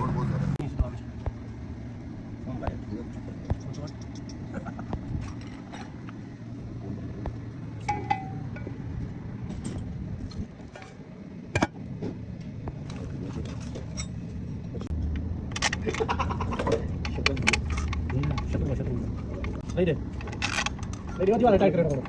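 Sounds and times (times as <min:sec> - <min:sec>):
low steady hum: 0:00.0 - 0:22.0
metal tools clinking: 0:03.1 - 0:06.2, 0:07.8 - 0:11.7, 0:12.8 - 0:14.9, 0:15.5 - 0:22.0.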